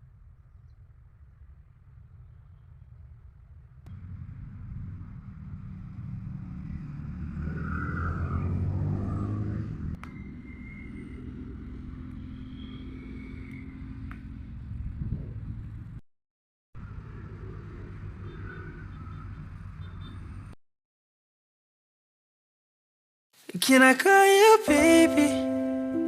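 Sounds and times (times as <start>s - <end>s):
motor vehicle rumbling: 0.0s - 16.0s, 16.8s - 20.6s.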